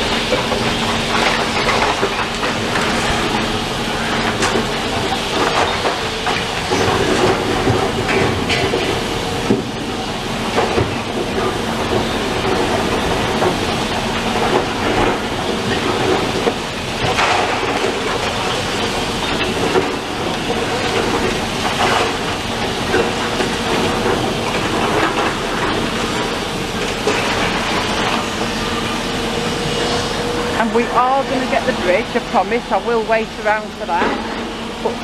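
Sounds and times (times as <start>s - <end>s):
excavator engine running: 0.0s - 35.0s
falling brick and rubble: 0.1s - 3.4s, 10.5s - 28.3s.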